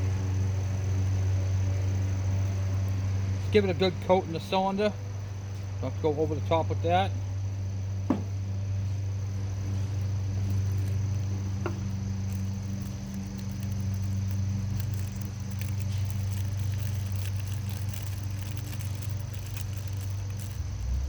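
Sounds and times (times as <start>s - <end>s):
steady low hum: 0.0s - 21.0s
small parts clicking and tapping: 10.4s - 21.0s.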